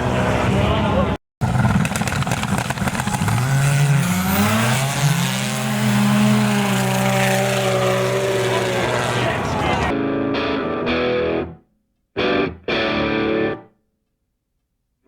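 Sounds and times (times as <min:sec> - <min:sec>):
snowmobile engine at full throttle: 0:01.4 - 0:09.9.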